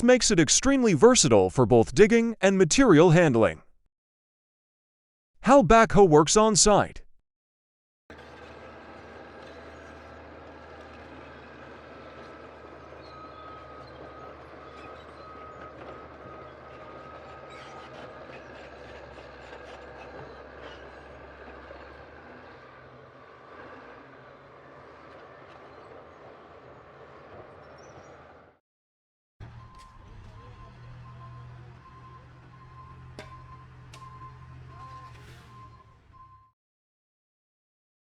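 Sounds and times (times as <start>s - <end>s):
construction machine engine running: 8.1s - 28.6s, 29.4s - 36.3s.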